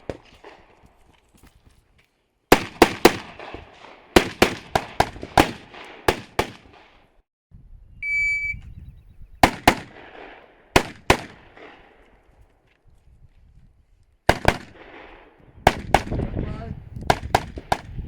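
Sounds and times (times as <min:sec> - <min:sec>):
gunshots with echo: 0:02.5 - 0:07.0, 0:09.4 - 0:12.0, 0:14.3 - 0:16.3
shot timer beep: 0:08.0 - 0:08.6.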